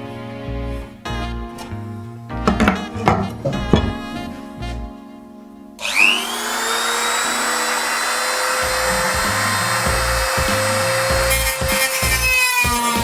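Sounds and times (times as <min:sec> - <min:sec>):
background music: 0:00.0 - 0:13.0
high-speed electric tool whine: 0:05.8 - 0:13.0.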